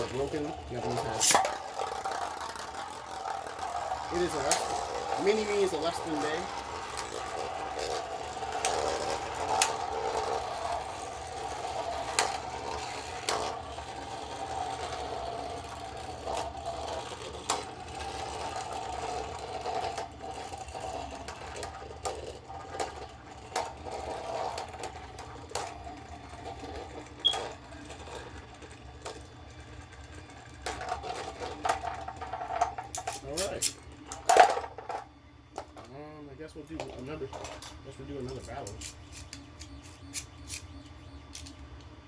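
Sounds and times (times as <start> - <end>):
spinning tops clicking on impact: 0.0 - 29.2, 30.5 - 35.8
spinning tops whirring: 0.0 - 42.0.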